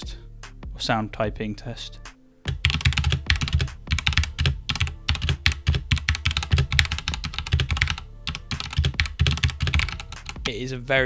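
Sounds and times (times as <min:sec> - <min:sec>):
fast mechanical keyboard typing: 0:02.5 - 0:10.5.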